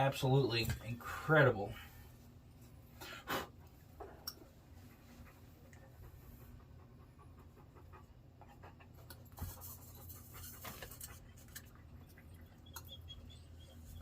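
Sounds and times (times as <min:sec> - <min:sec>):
dog panting: 0:04.4 - 0:14.0.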